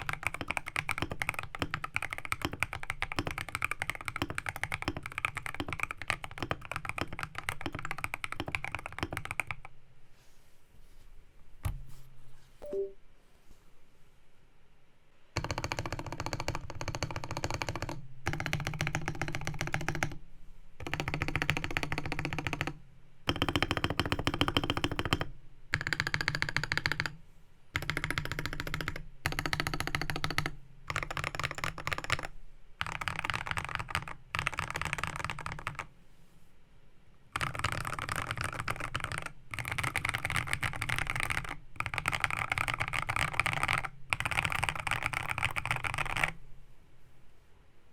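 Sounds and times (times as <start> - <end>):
mechanical keyboard typing: 0.0 - 9.7, 15.4 - 20.2, 20.8 - 27.2, 27.8 - 35.9, 37.4 - 46.4.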